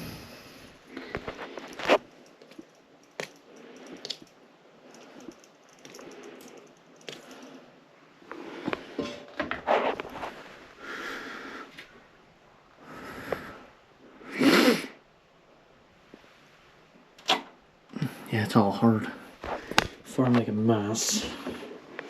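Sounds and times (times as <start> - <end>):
rustling: 0.0 - 10.8.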